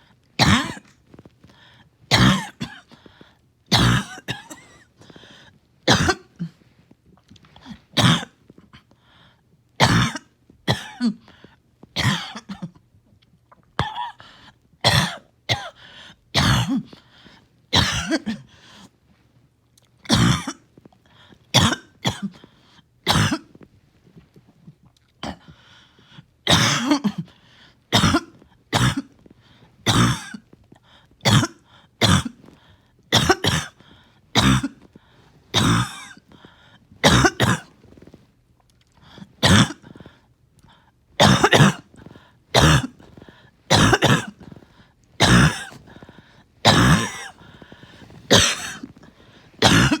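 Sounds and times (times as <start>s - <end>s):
person coughing: 0.4s - 1.2s, 2.1s - 3.1s, 3.7s - 6.6s, 7.6s - 8.9s, 9.8s - 12.8s, 13.8s - 14.2s, 14.8s - 15.8s, 16.4s - 17.0s, 17.8s - 18.6s, 20.1s - 20.6s, 21.6s - 22.5s, 23.1s - 23.6s, 26.5s - 29.3s, 29.9s - 30.5s, 31.2s - 33.8s, 34.4s - 34.9s, 35.6s - 38.2s, 39.1s - 40.2s, 41.2s - 50.0s.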